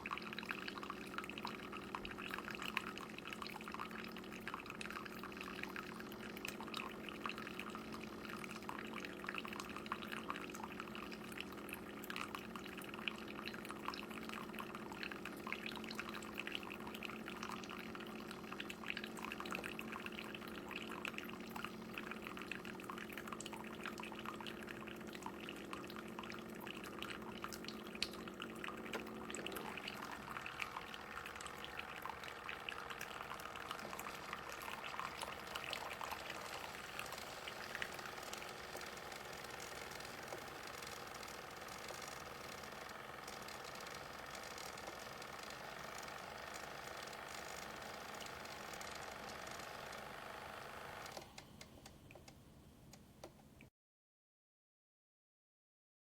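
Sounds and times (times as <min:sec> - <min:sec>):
coffee streaming into cup: 0:00.0 - 0:51.4
pump humming: 0:00.0 - 0:51.9.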